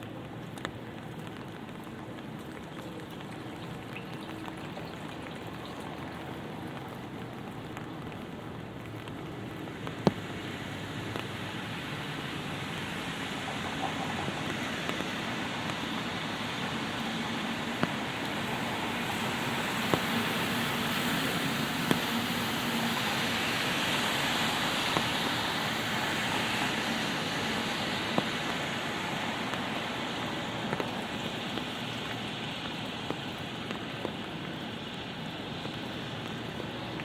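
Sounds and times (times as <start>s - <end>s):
light rain hissing: 0.0s - 37.0s
single raindrop taps: 9.8s - 10.3s, 11.1s - 11.4s, 30.6s - 34.3s.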